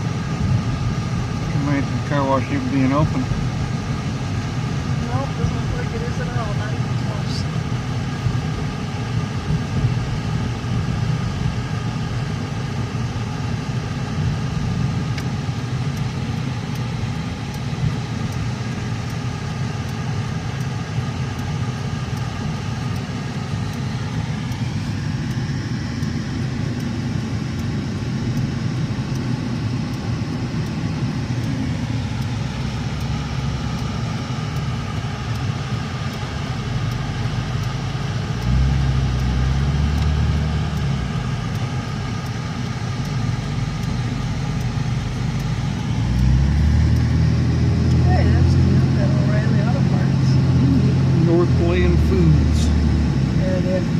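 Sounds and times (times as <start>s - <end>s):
car engine and road hum: 0.0s - 53.9s.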